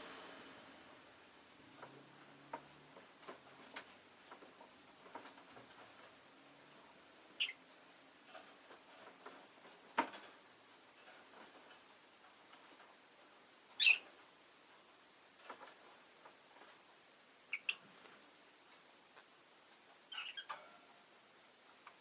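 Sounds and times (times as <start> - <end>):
lovebirds chirping: 7.4 - 7.6, 13.8 - 14.1, 17.5 - 17.8, 20.1 - 20.5.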